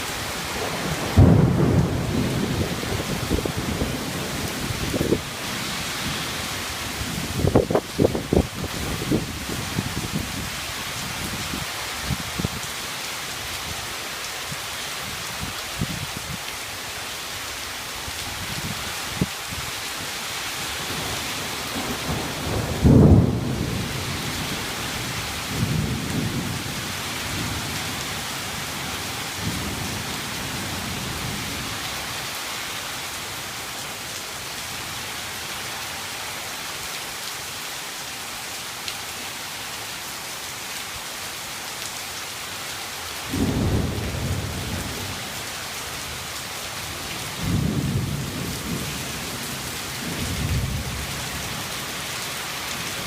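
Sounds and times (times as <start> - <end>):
heavy rain pouring: 0.0 - 53.0
wind: 0.0 - 53.0
low thunder rumbles: 0.6 - 10.5, 20.8 - 28.0, 43.3 - 45.2, 47.3 - 51.5.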